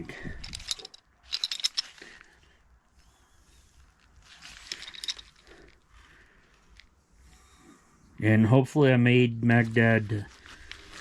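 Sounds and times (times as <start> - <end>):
small object clicking and rattling: 0.4 - 2.0, 4.4 - 5.8.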